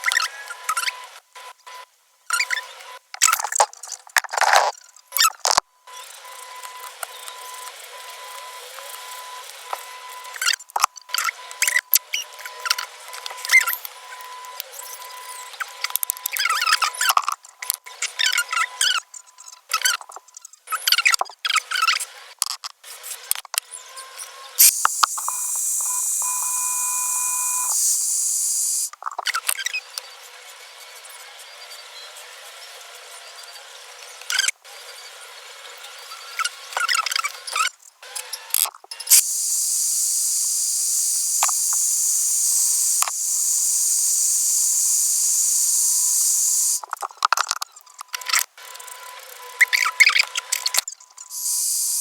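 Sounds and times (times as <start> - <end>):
aerosol can spraying: 24.6 - 28.9, 39.1 - 46.8, 51.3 - 52.0.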